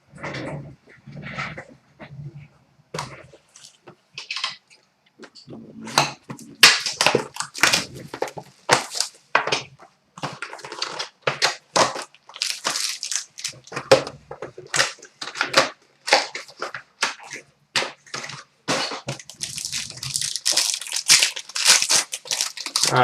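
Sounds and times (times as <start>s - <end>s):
plastic wrapping tearing and crinkling: 6.0s - 9.6s, 10.2s - 23.0s.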